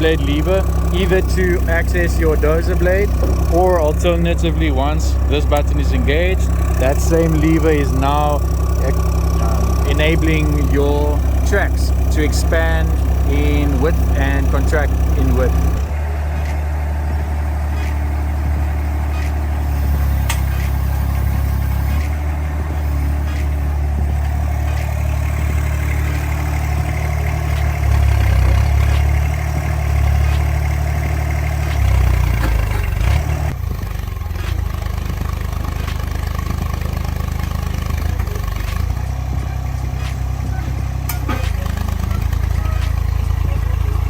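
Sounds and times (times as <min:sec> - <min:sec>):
excavator diesel engine running: 0:00.0 - 0:44.0.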